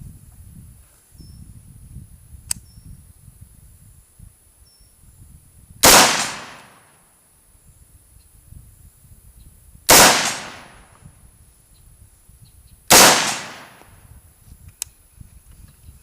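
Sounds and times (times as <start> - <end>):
rifle shots echoing: 5.8 - 6.9, 9.9 - 10.8, 12.9 - 13.9.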